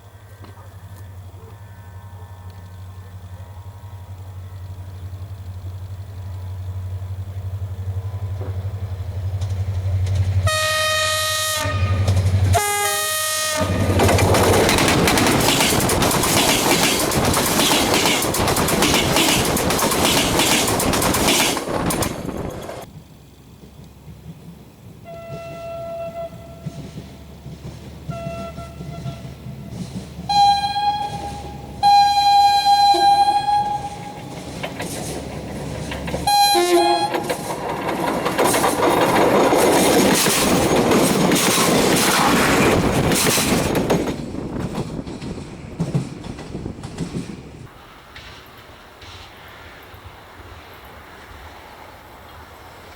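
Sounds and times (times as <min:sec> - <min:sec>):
low train rumble: 0:00.0 - 0:52.9
rushing rail noise: 0:00.0 - 0:52.9
train horn blasts: 0:10.4 - 0:14.1, 0:25.0 - 0:26.9, 0:28.0 - 0:34.4, 0:36.2 - 0:37.4.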